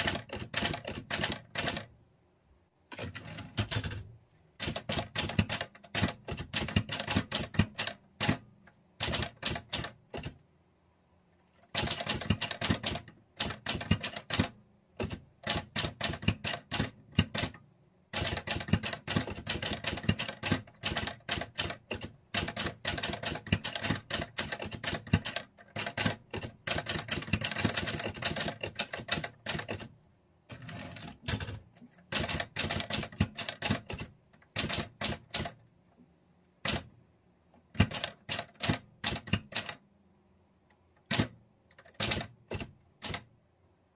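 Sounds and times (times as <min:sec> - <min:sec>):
typewriter key strikes: 0:00.0 - 0:01.8, 0:02.9 - 0:08.4, 0:09.0 - 0:10.4, 0:11.6 - 0:17.6, 0:18.2 - 0:29.9, 0:31.0 - 0:35.6, 0:37.7 - 0:39.8, 0:41.1 - 0:43.3.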